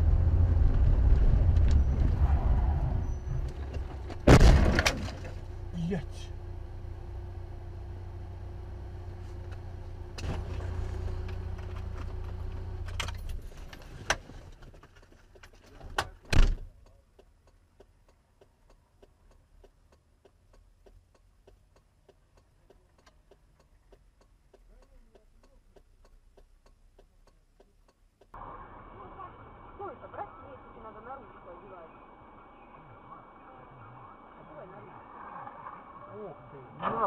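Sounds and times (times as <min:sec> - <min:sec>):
car engine and road drone: 0:00.0 - 0:37.0
loud thump: 0:04.1 - 0:05.4.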